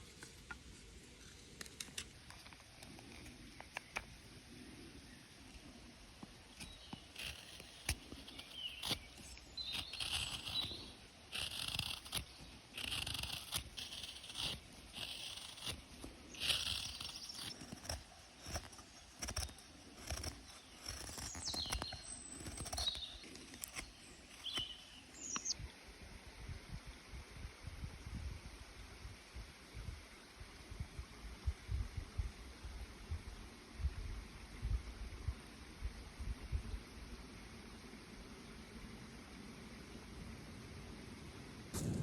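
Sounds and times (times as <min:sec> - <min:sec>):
knife scraping wood: 0:06.5 - 0:25.5.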